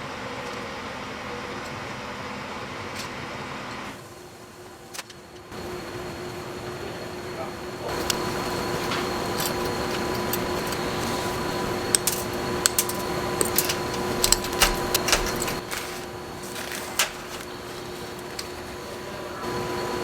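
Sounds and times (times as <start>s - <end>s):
electrical hum: 5.5s - 20.0s
small parts clicking and tapping: 7.9s - 18.7s.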